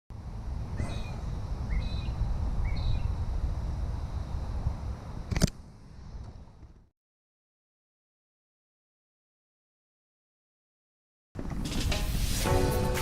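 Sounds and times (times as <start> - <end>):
wind rumbling on microphone: 0.1 - 6.9
sharp click: 5.3 - 5.6.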